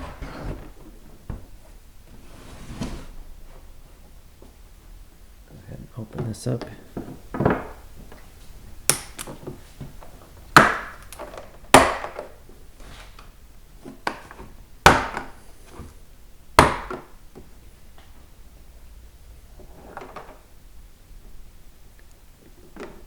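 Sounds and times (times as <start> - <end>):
plastic case snapping clicks: 8.9 - 9.4.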